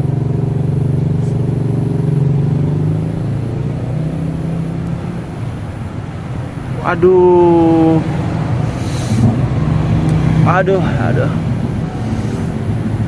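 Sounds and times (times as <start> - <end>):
engine humming: 0.0 - 13.0.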